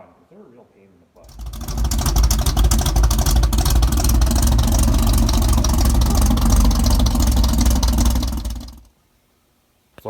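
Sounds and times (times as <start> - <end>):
loud engine running: 1.2 - 8.9.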